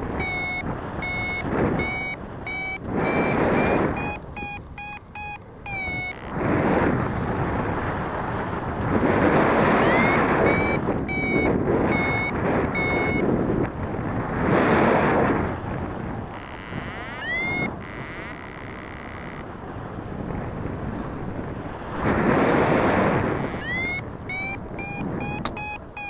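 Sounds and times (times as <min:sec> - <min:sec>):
variometer beeping: 0:00.0 - 0:06.5, 0:09.7 - 0:13.4, 0:16.3 - 0:19.5, 0:23.1 - 0:26.0
wind rushing over microphone: 0:00.0 - 0:26.0.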